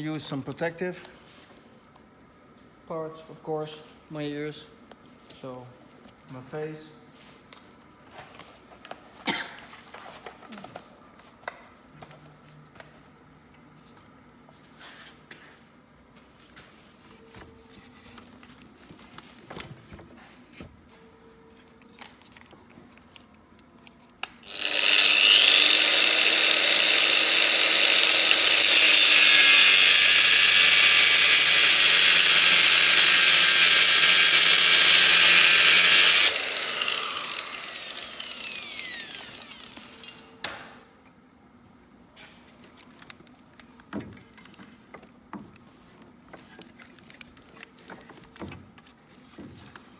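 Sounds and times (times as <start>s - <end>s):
grinder cutting metal: 24.5s - 40.1s
grinder winding down whine: 24.5s - 40.2s.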